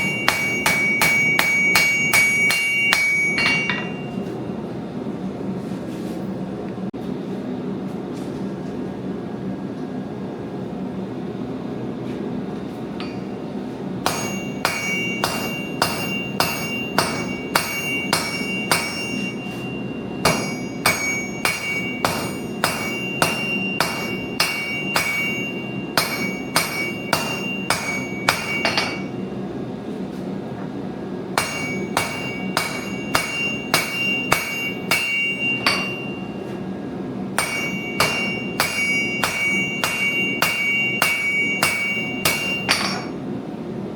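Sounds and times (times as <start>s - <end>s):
anvil ringing: 0.0s - 4.3s, 14.0s - 29.3s, 31.4s - 36.6s, 37.4s - 43.2s
hammer striking metal on anvil: 0.0s - 4.3s, 13.0s - 13.3s, 14.0s - 29.2s, 31.4s - 36.6s, 37.4s - 43.2s.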